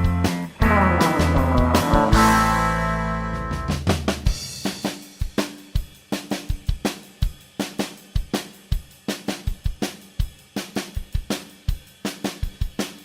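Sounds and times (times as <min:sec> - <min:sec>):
drum kit beat: 0:00.0 - 0:13.0
sustained chord ringing: 0:00.6 - 0:03.4.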